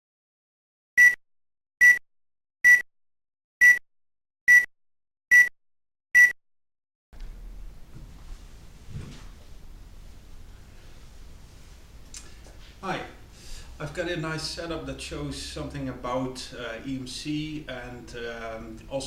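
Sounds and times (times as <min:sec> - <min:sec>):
short electronic beeps: 0:01.0 - 0:01.2, 0:02.6 - 0:02.8, 0:04.5 - 0:04.7, 0:05.3 - 0:05.5, 0:06.2 - 0:06.4
faint room noise: 0:07.2 - 0:19.0.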